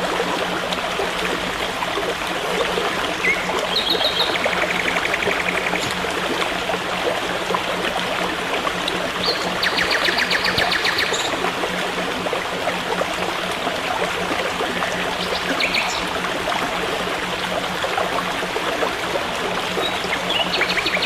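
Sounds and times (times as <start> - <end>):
stream running: 0.0 - 21.0.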